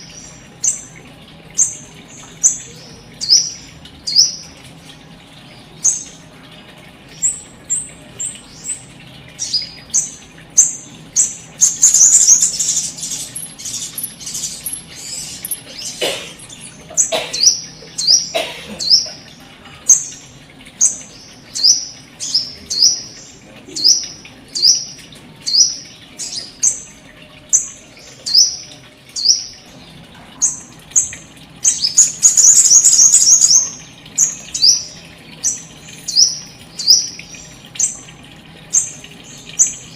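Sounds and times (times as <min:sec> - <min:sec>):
small birds chirping: 0:00.0 - 0:04.6, 0:05.4 - 0:39.9
rapid bird twittering: 0:09.4 - 0:19.2, 0:30.4 - 0:38.0.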